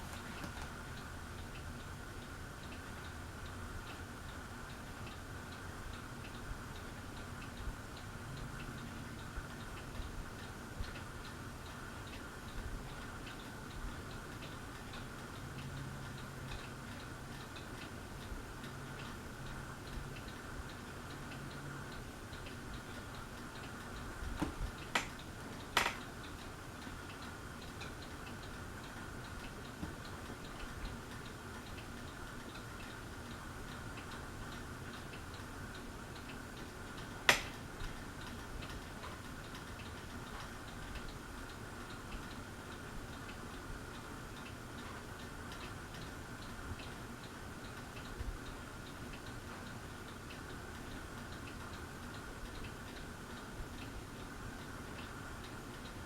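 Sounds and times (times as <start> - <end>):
ceiling fan motor hum: 0.0 - 56.0
fan ticking: 0.0 - 56.0
loud clicks: 25.8 - 26.0, 37.3 - 37.6.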